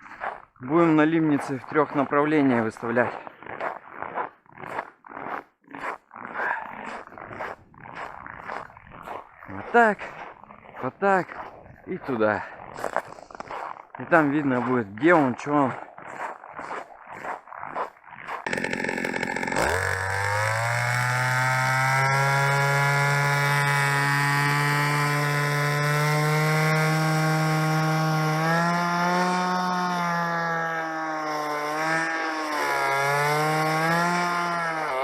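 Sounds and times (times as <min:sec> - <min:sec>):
small petrol engine revving: 0:18.4 - 0:35.0.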